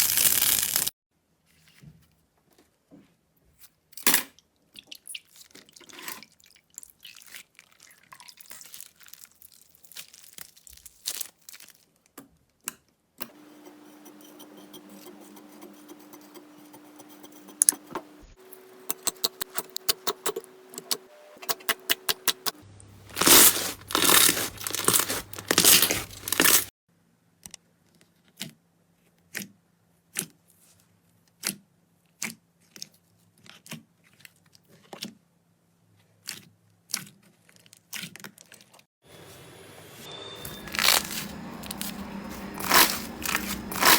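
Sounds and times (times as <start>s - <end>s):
slime clicking and crackling: 23.1s - 26.7s.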